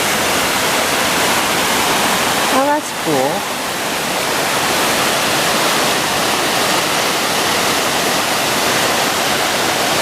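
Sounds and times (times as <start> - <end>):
water rushing over a dam: 0.0 - 10.0.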